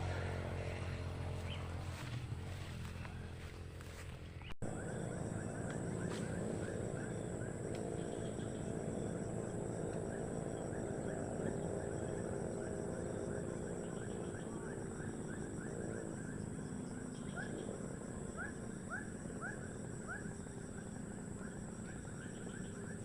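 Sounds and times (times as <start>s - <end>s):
low even rumble: 0.0s - 12.2s.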